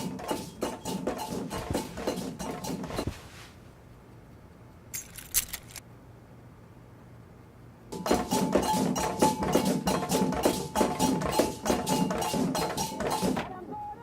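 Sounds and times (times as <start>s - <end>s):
fast percussive knocking beat: 8.0s - 13.4s.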